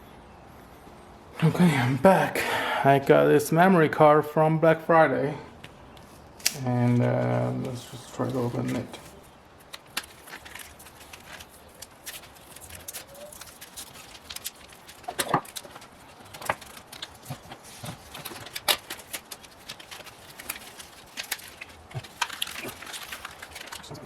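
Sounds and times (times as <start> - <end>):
plastic packaging being torn open: 6.4 - 7.4, 9.6 - 24.0.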